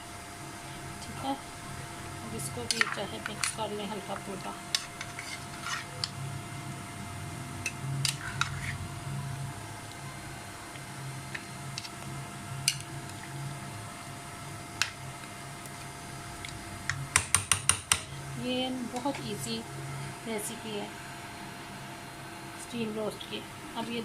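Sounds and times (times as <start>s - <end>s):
steady low hum: 0.0s - 24.0s
soft squishing of food mixing: 2.2s - 6.2s.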